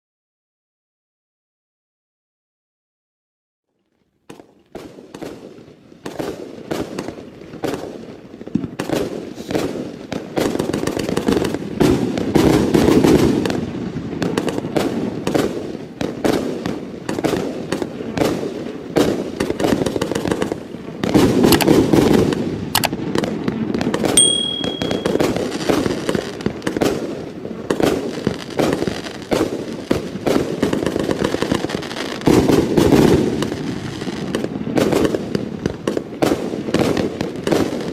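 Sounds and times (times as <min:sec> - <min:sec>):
loud firework bangs: 0:25.0 - 0:37.9.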